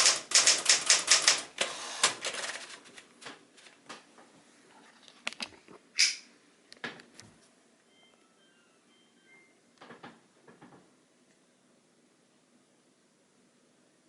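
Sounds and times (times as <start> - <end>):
typewriter mechanical clicks: 0.0 - 2.8
typewriter keystrokes: 0.0 - 3.1.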